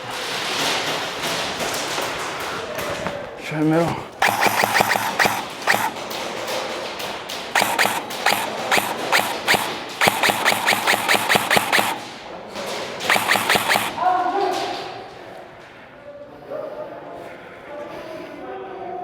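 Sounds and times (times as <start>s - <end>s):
airsoft gun rapid fire: 3.8s - 12.3s, 13.0s - 14.4s.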